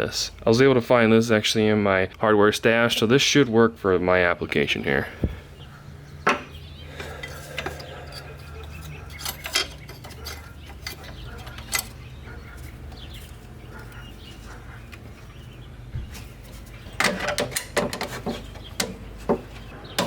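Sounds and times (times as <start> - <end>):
small metal clicks and clinks: 7.2 - 12.1.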